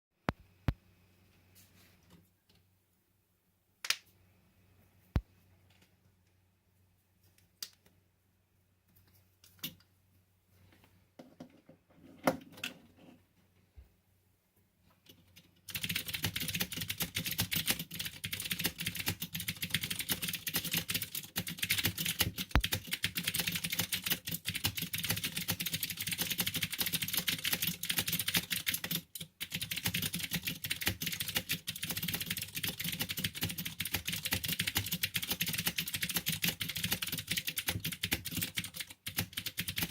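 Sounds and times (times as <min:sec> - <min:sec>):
mechanical keyboard typing: 0:15.1 - 0:39.9.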